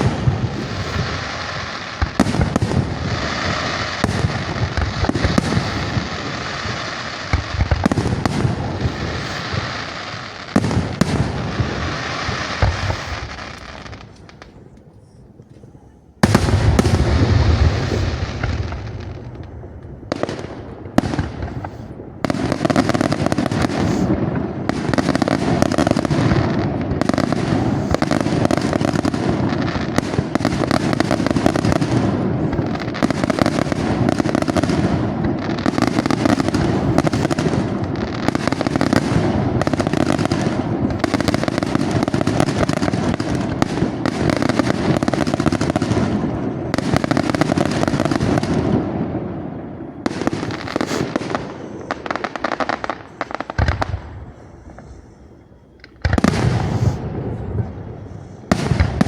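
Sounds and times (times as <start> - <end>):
fireworks bangs and crackling: 0.0 - 59.0.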